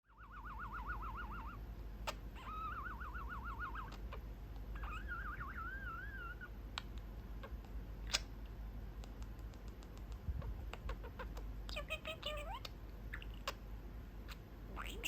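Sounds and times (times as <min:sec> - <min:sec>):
budgerigar whistling: 0:00.1 - 0:04.2, 0:04.8 - 0:06.5.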